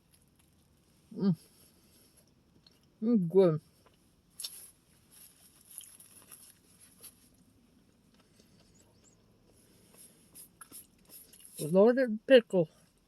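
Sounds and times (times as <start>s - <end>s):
soft chewing: 0.0s - 3.0s, 3.7s - 11.7s
food handling noises: 3.9s - 8.8s.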